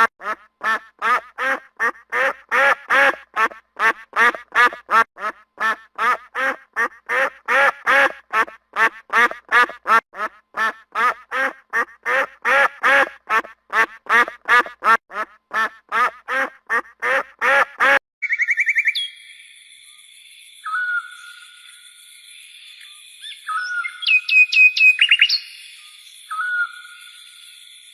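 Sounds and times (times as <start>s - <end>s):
duck quacking: 0.0s - 18.0s.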